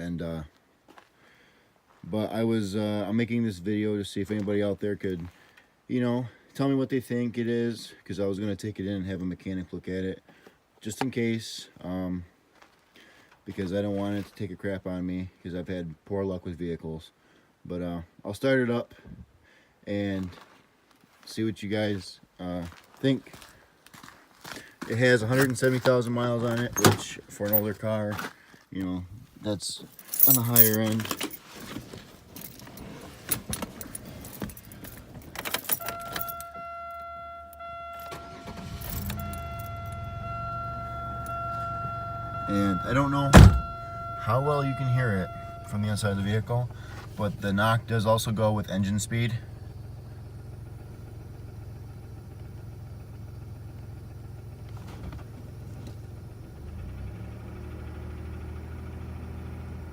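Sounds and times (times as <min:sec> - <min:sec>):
car engine starting and idling: 0:24.8 - 0:28.3, 0:29.2 - 0:59.9
keys jangling in ignition: 0:26.5 - 0:27.8, 0:29.7 - 0:36.7, 0:37.5 - 0:40.4
steady high tone: 0:35.8 - 0:46.5.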